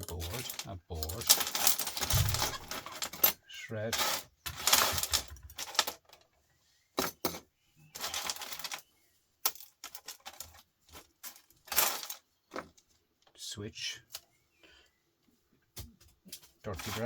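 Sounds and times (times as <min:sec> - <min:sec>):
small metal parts clattering: 0:00.0 - 0:06.4, 0:07.0 - 0:12.9, 0:16.3 - 0:17.0.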